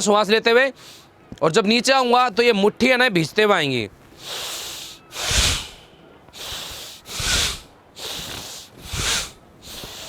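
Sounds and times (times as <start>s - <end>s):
man forceful breathing: 4.1s - 10.0s.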